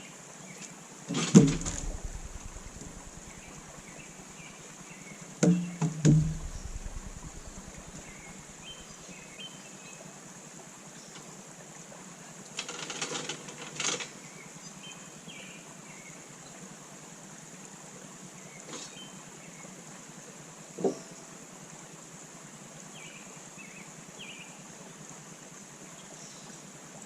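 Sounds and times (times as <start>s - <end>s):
clattering knocks: 1.3s - 3.0s
engine idling: 1.4s - 4.4s, 6.1s - 9.0s.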